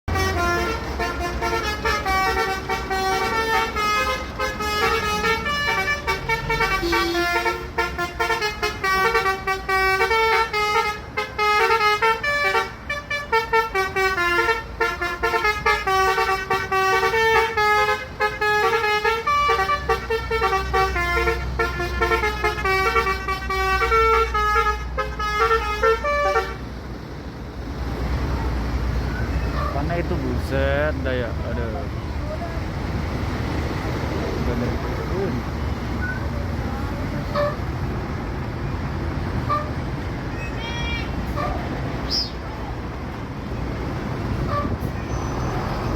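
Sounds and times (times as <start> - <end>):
multi-tone musical bus horn: 0.1 - 26.8, 29.1 - 29.9, 35.8 - 42.4, 43.5 - 45.9.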